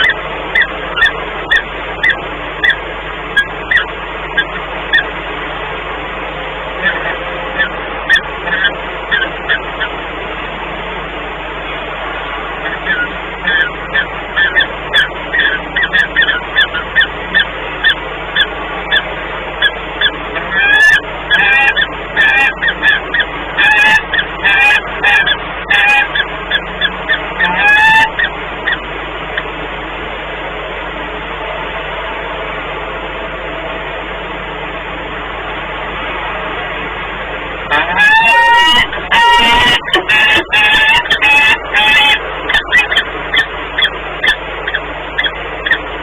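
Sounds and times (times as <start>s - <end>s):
falcons calling: 0.0s - 5.2s, 6.7s - 10.0s, 12.2s - 29.5s, 37.7s - 46.0s.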